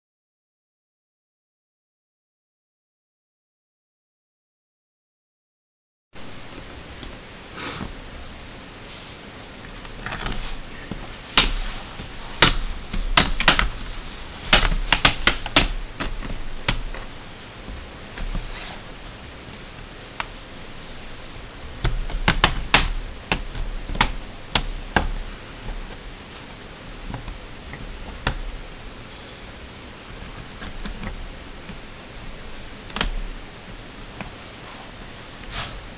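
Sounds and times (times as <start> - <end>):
hard plastic parts handled: 9.6 - 28.6.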